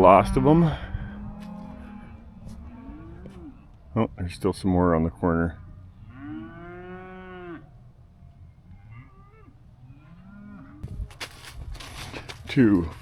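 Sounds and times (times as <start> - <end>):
cattle mooing: 0.0 - 4.2, 5.1 - 10.9
rustling: 10.2 - 13.0.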